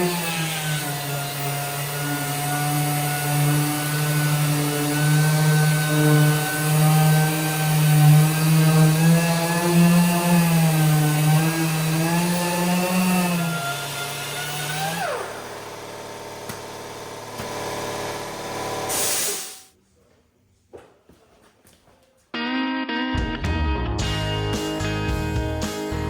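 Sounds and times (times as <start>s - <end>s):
air sanding tool whining: 0.0s - 19.7s
air hiss: 18.9s - 19.7s.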